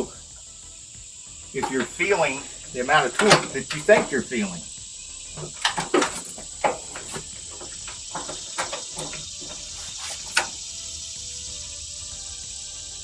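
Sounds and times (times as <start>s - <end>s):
faint steady hiss: 0.0s - 13.0s
hand tools clicking and knocking: 1.6s - 10.7s.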